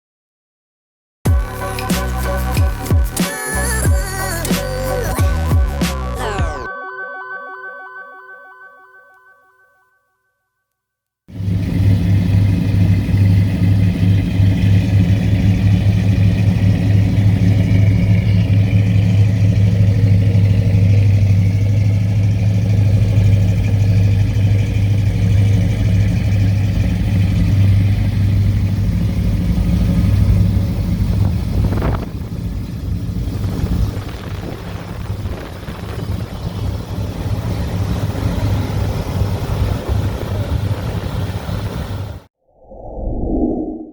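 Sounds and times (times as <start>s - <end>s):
low engine drone: 1.3s - 6.7s, 11.3s - 43.9s
brief rising sound: 42.4s - 43.9s.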